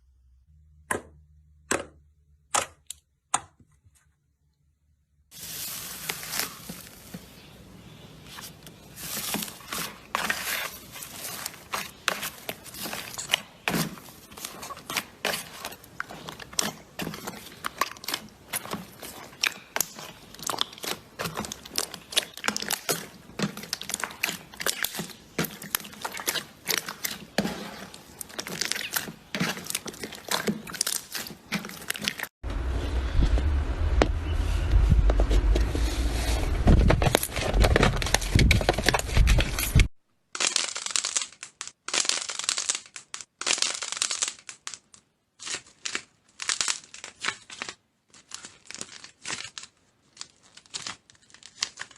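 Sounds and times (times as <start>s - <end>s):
slime crackling and popping: 9.0s - 32.3s, 40.4s - 51.9s.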